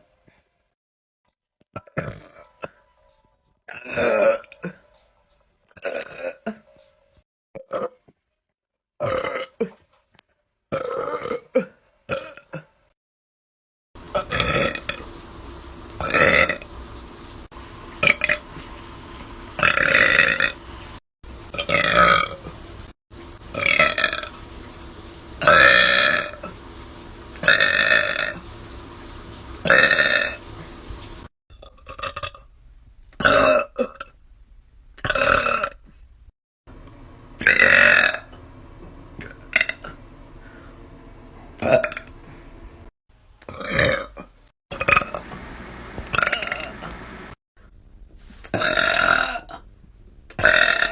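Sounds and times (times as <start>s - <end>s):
person burping loudly: 1.8s - 2.8s, 3.7s - 4.9s, 5.7s - 6.7s, 7.6s - 8.1s, 9.0s - 9.8s, 10.7s - 12.8s, 14.1s - 15.0s, 16.0s - 16.7s, 19.6s - 20.6s, 21.6s - 22.4s, 23.5s - 24.3s, 25.4s - 26.6s, 27.4s - 28.4s, 29.6s - 30.4s, 31.5s - 32.5s, 33.2s - 34.2s, 35.0s - 35.9s, 37.4s - 38.4s, 41.6s - 42.1s, 43.4s - 45.3s, 46.1s - 46.9s, 48.5s - 49.7s, 50.3s - 50.9s.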